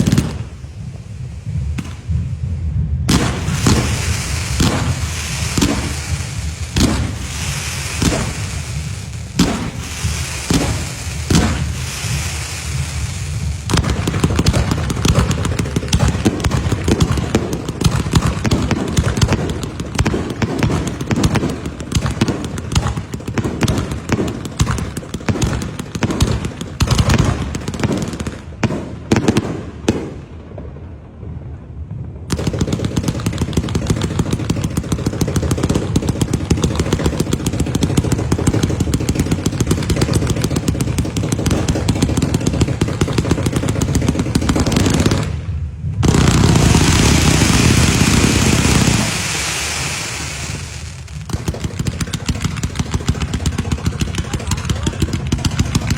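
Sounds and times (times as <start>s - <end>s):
loud steady hiss: 0.0s - 28.3s, 33.6s - 55.3s
firecrackers crackling: 0.0s - 55.9s.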